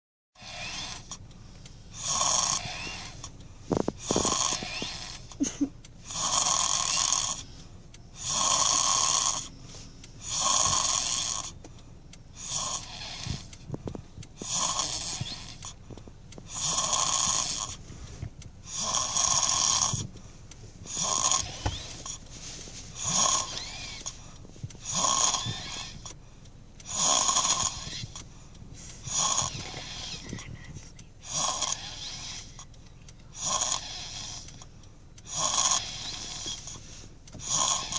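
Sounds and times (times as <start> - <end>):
child snoring: 0.4 - 1.2, 1.9 - 7.5, 8.1 - 9.5, 10.2 - 11.6, 12.3 - 13.7, 14.4 - 15.8, 16.5 - 17.8, 18.6 - 20.1, 20.8 - 22.2, 22.9 - 24.2, 24.8 - 26.2, 26.8 - 32.7, 33.3 - 34.6, 35.2 - 36.8, 37.4 - 37.9.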